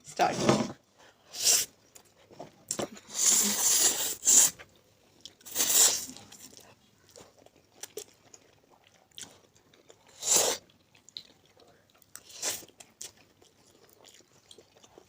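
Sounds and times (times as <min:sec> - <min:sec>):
noodle slurping: 0:03.1 - 0:04.6, 0:05.5 - 0:06.2, 0:10.1 - 0:10.6
chewing and wet mouth clicks: 0:06.2 - 0:15.0.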